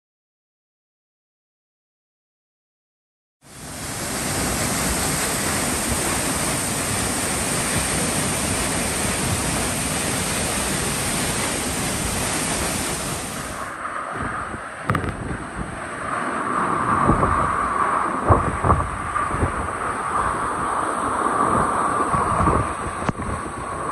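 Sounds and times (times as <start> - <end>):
waterfall roaring: 3.5 - 15.8.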